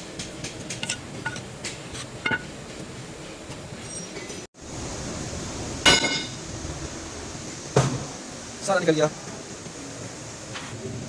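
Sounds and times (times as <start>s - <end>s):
hammer striking metal: 2.2s - 2.5s, 5.9s - 6.4s.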